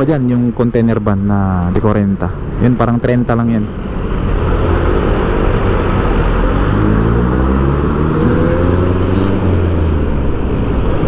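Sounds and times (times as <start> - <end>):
low traffic rumble: 0.0 - 11.0
truck diesel engine passing: 2.2 - 11.0.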